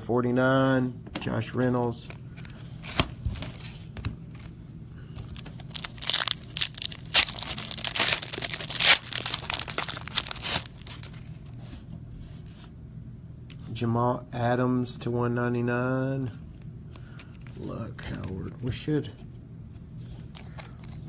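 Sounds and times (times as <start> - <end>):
card pack wrapper crinkling and tearing: 5.2 - 11.3, 20.2 - 21.0.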